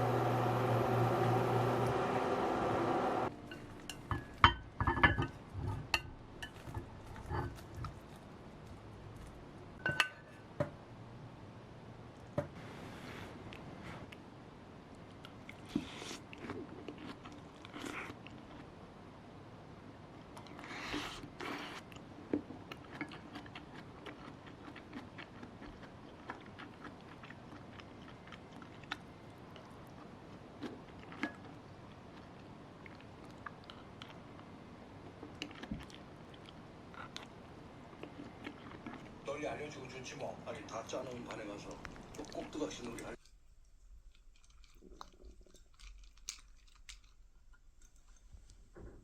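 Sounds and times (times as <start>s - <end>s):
dishes and utensils clinking: 3.4s - 7.9s, 9.8s - 10.3s
person chewing: 15.2s - 18.7s, 20.4s - 39.2s, 41.8s - 48.6s.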